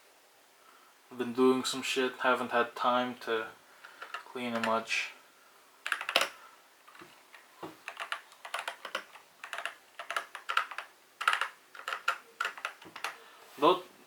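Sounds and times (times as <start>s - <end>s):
mechanical keyboard typing: 3.9s - 4.8s, 5.8s - 13.2s.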